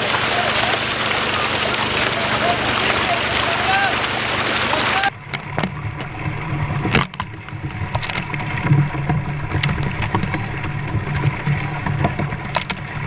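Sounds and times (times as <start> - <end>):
truck low rumble: 0.0 - 5.1.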